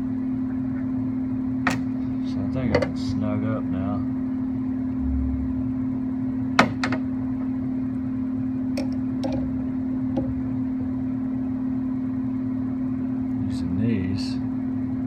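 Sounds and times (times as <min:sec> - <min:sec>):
steady hum: 0:00.0 - 0:15.0.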